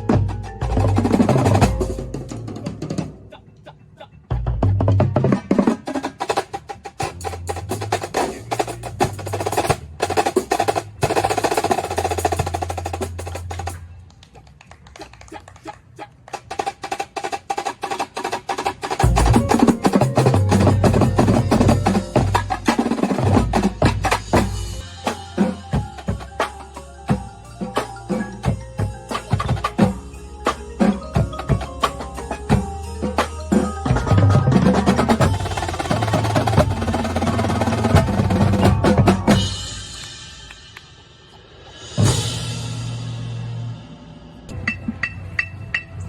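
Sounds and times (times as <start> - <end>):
snare drums: 0.0 - 3.2, 4.8 - 13.8, 16.3 - 42.6
pitched bass drums: 19.0 - 40.8.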